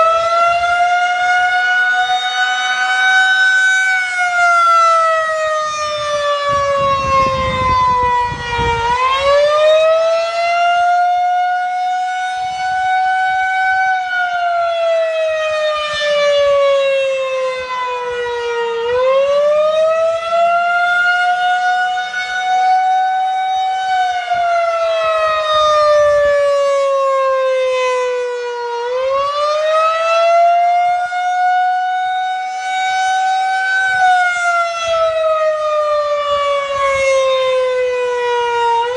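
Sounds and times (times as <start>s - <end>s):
siren wailing: 0.0s - 38.9s.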